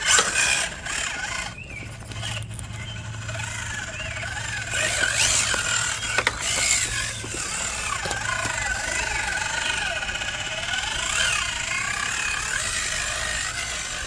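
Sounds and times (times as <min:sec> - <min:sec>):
electric motor and gear whine: 0:00.0 - 0:14.0
sharp clicks and knocks: 0:04.7 - 0:09.2.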